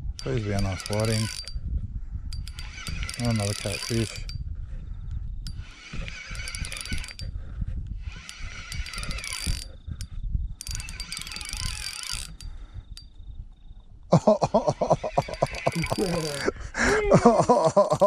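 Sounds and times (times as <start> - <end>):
fishing reel being cranked: 0.0 - 1.6, 2.3 - 4.5, 5.4 - 13.2, 14.9 - 16.5.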